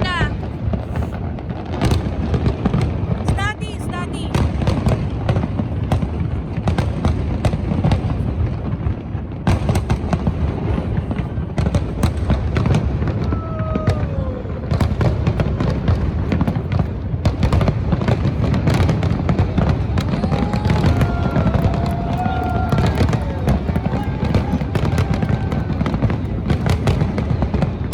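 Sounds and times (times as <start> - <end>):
fireworks bangs and crackles: 0.0 - 27.9.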